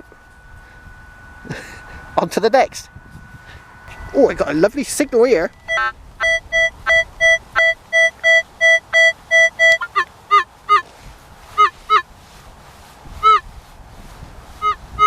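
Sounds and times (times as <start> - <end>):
metal detector beeping: 0.0 - 10.8, 11.6 - 12.1, 13.2 - 13.5, 14.6 - 15.0
sliding chirps: 0.0 - 10.9, 11.5 - 12.1.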